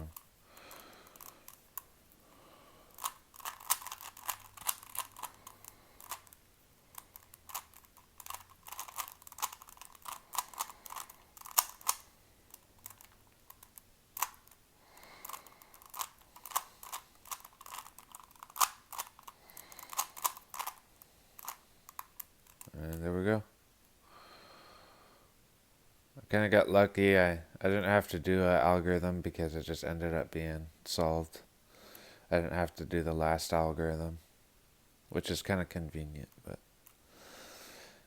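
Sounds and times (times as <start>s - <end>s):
rubik's cube plastic clicks: 0.0s - 1.9s, 2.9s - 22.8s.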